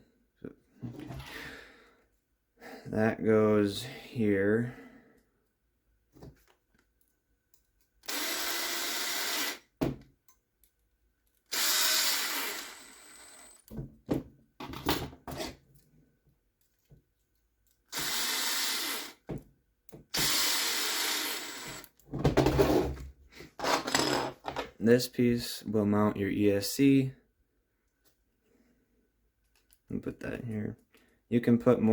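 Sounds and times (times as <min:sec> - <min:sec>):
power driver driving screws: 0:08.0 - 0:09.7, 0:11.5 - 0:13.6, 0:17.9 - 0:19.2, 0:20.1 - 0:22.0.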